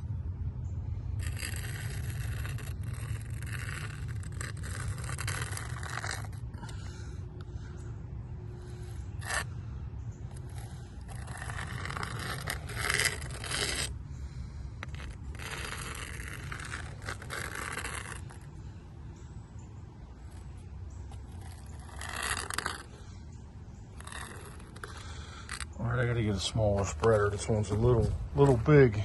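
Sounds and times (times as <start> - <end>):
steady low rumble: 0.0 - 29.0
caulk spreader scraping: 1.2 - 6.9, 8.6 - 9.5, 10.3 - 18.5, 21.1 - 23.1, 23.9 - 28.6.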